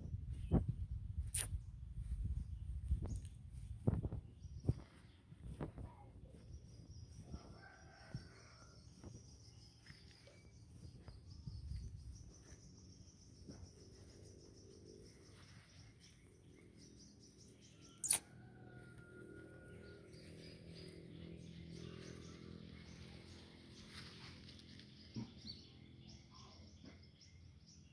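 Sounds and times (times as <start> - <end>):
sharp click: 1.3 - 1.6, 18.0 - 18.3
birds chirping: 2.8 - 18.6.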